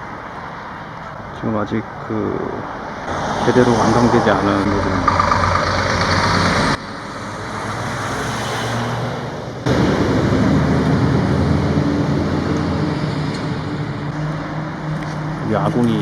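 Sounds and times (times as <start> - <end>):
mechanical engine drone: 2.1 - 7.6, 9.6 - 16.0.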